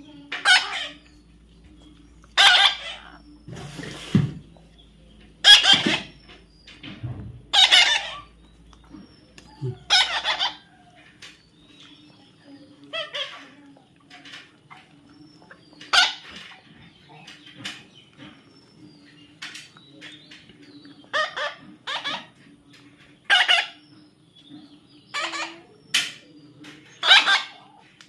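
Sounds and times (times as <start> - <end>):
parrot squawking: 0.3 - 1.2, 2.4 - 3.3, 5.4 - 6.2, 7.5 - 8.3, 9.5 - 10.8, 12.9 - 13.6, 15.9 - 16.5, 21.1 - 22.4, 23.3 - 23.8, 25.1 - 25.7, 27.0 - 27.7.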